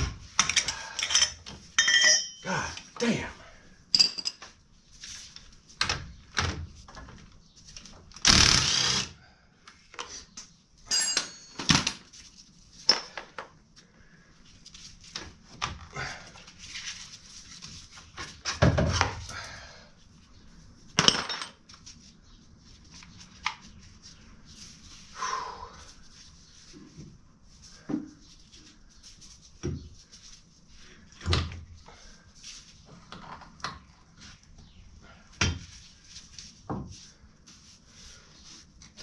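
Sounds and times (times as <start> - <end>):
metal tools clinking and knocking: 0.4 - 2.5, 3.9 - 4.5, 10.9 - 12.0, 21.0 - 21.6.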